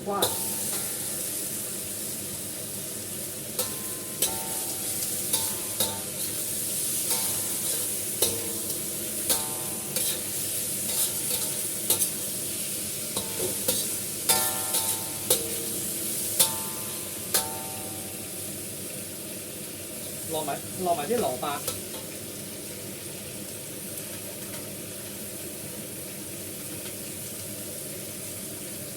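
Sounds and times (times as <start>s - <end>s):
vegetables sizzling in hot oil: 0.0s - 28.9s
metal spatula scraping a pan: 0.2s - 1.4s, 3.6s - 12.4s, 13.1s - 18.4s.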